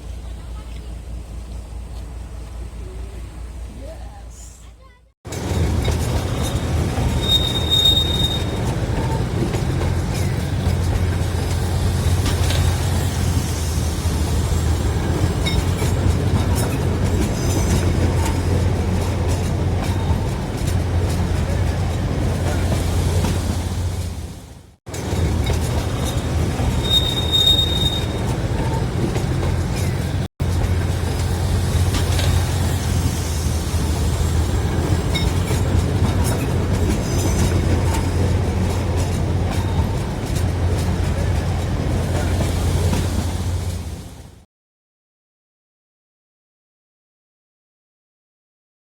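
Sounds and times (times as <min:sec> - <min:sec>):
train rumbling: 0:00.0 - 0:44.5
light clicks of train wheels: 0:00.2 - 0:02.9, 0:04.6 - 0:13.0, 0:24.9 - 0:33.1, 0:34.5 - 0:43.9
high wheel squeaks: 0:05.3 - 0:13.2, 0:24.9 - 0:43.8.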